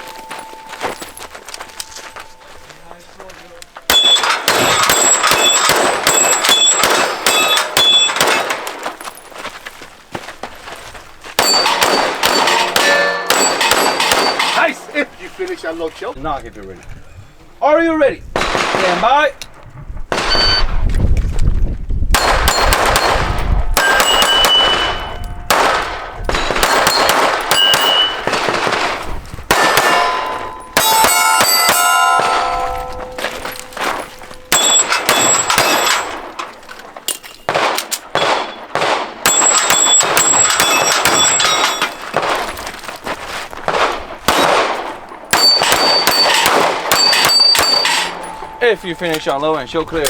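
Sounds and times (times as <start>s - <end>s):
steel targets clanging: 0.0s - 3.0s, 3.8s - 9.1s, 11.4s - 15.7s, 22.2s - 28.9s, 29.5s - 42.6s, 44.3s - 50.0s
pistol shots: 3.9s - 8.8s, 11.4s - 14.6s, 18.4s - 19.1s, 20.1s - 20.7s, 22.1s - 36.4s, 37.5s - 42.6s, 43.6s - 48.6s.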